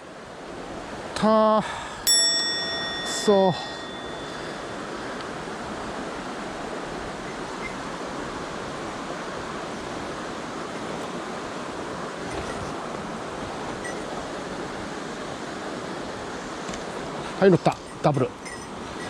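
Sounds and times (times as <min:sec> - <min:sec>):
mountain stream rushing: 0:00.0 - 0:19.0.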